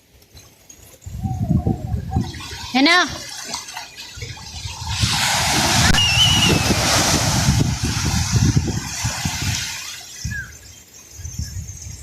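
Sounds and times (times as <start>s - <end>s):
wind buffeting microphone: 1.0s - 12.0s
sea wave breaking: 2.4s - 10.3s.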